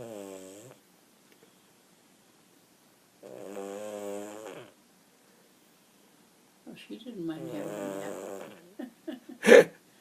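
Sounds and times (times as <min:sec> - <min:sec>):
dog snoring: 0:00.0 - 0:00.8, 0:03.2 - 0:04.8, 0:07.4 - 0:08.7.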